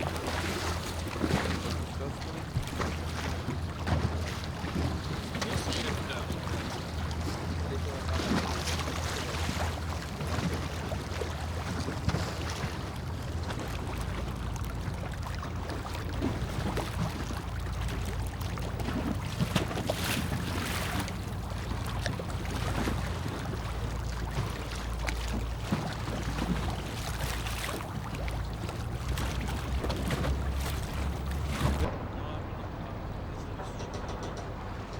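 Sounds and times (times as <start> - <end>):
low rumble: 27.9 - 34.9.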